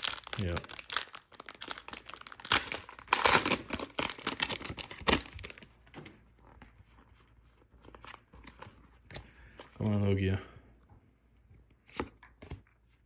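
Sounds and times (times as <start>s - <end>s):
foil wrapper crinkling and tearing: 0.0s - 5.7s.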